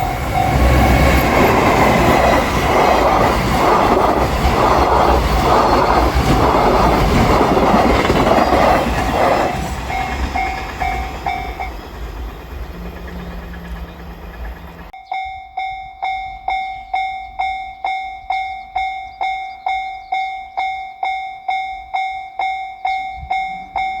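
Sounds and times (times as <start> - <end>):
level-crossing alarm bell ringing: 0.0 - 4.0, 8.1 - 12.7, 14.4 - 24.0
freight train rumbling over rails: 0.0 - 15.0.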